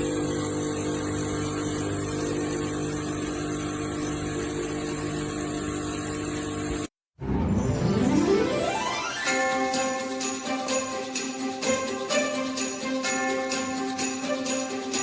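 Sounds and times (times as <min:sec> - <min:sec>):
mechanical hum: 0:00.0 - 0:06.9.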